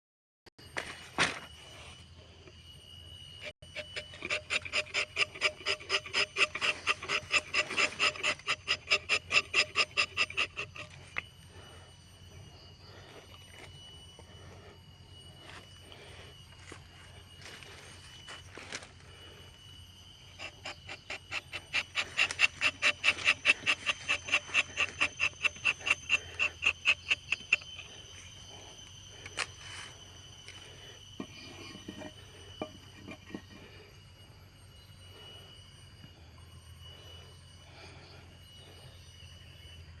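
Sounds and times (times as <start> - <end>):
knife rasping through bark: 3.7 - 11.2, 20.3 - 28.0.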